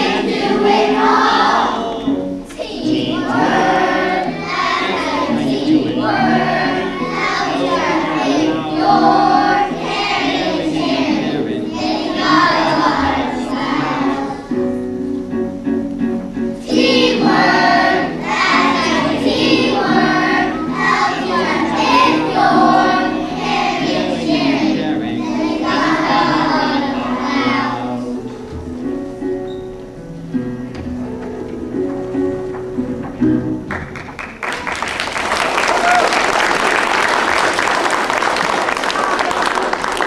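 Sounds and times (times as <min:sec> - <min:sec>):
children's chorus singing: 0:00.0 - 0:14.6, 0:16.6 - 0:28.5
backing music: 0:00.0 - 0:35.4.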